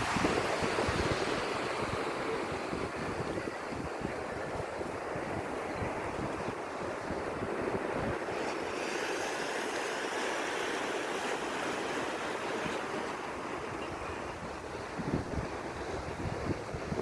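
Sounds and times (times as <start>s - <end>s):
waves breaking on beach: 0.0s - 17.0s
wind buffeting microphone: 0.0s - 17.0s.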